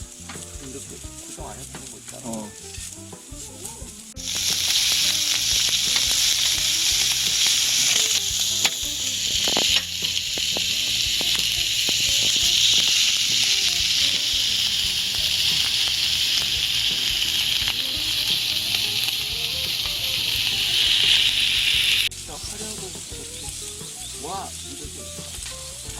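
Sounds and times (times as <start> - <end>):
food sizzling in a pan: 0.0 - 25.9
small pops: 4.2 - 22.0.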